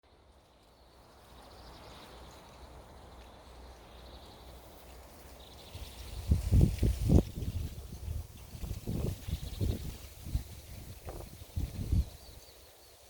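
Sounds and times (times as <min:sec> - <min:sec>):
wind in a forest: 0:00.0 - 0:13.0
wind gusts buffeting microphone: 0:05.5 - 0:12.6.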